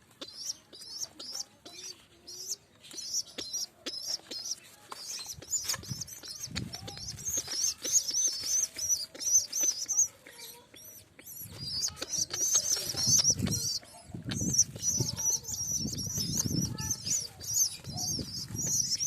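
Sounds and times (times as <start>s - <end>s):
young pigeon peeping: 0.0s - 19.0s
wings fluttering: 3.9s - 10.2s, 11.2s - 19.0s.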